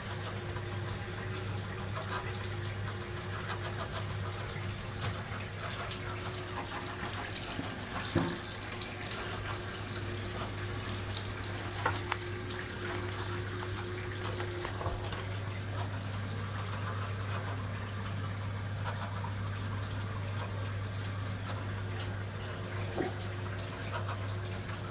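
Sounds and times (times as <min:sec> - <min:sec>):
low steady hum: 0:00.0 - 0:24.9
water running from a tap: 0:00.0 - 0:24.9.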